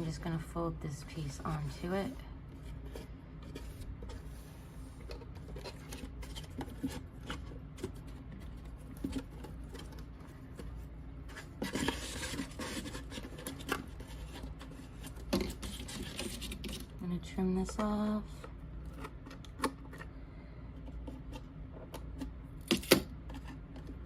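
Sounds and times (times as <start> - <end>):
rustling rub: 1.1 - 16.8.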